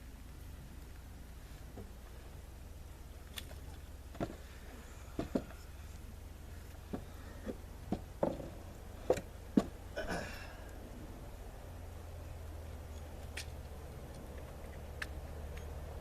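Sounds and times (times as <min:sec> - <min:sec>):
low steady hum: 0:00.0 - 0:16.0
parts knocking and clunking: 0:04.1 - 0:05.8, 0:06.8 - 0:10.0.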